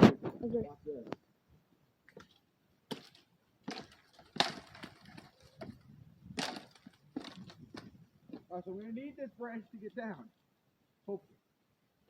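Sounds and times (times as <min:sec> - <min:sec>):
dead wood cracking: 0:02.1 - 0:09.1.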